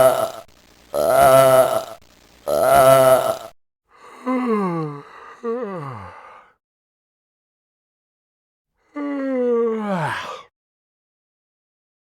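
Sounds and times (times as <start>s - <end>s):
person yawning: 0.0s - 3.5s, 4.1s - 6.4s, 9.0s - 10.5s.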